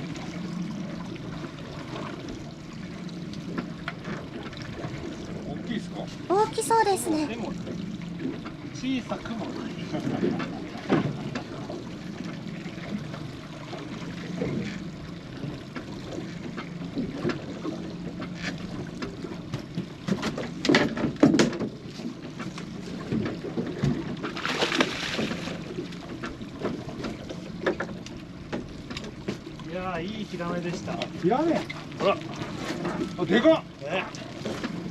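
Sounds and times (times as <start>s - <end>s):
rush of water: 0.0s - 7.8s, 23.8s - 26.2s, 29.6s - 34.9s
water sloshing against hull: 0.0s - 34.9s.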